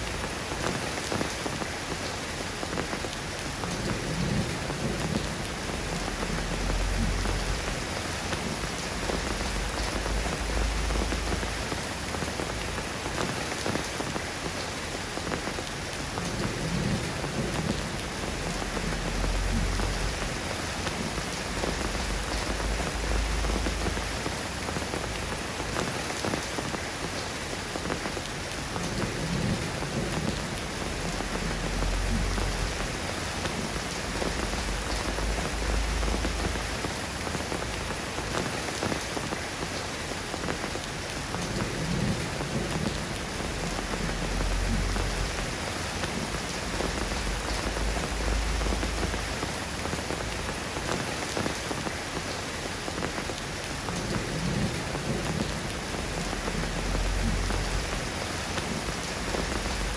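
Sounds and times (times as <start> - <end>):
steady rain falling: 0.0 - 59.9
distant thunder rumbles: 16.2 - 25.3, 28.8 - 38.2, 41.4 - 50.9, 53.9 - 59.9.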